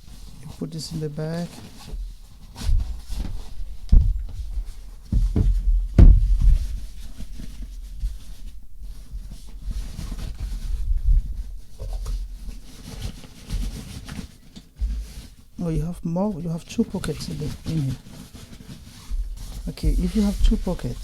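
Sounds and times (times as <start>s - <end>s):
bag handling bumps and rubbing: 1.6s - 21.0s
louder knocks: 5.2s - 6.6s.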